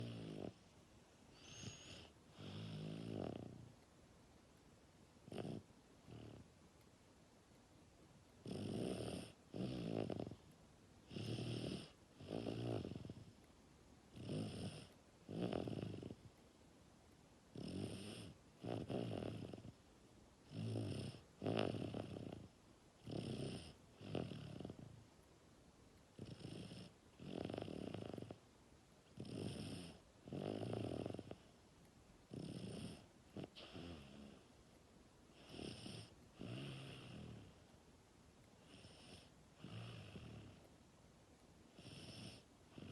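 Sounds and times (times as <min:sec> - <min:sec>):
person snoring: 0:00.0 - 0:00.6, 0:01.4 - 0:03.6, 0:05.3 - 0:06.4, 0:08.4 - 0:10.4, 0:11.1 - 0:13.3, 0:14.1 - 0:16.2, 0:17.6 - 0:19.7, 0:20.5 - 0:24.8, 0:26.2 - 0:28.4, 0:32.3 - 0:34.4, 0:35.4 - 0:37.6.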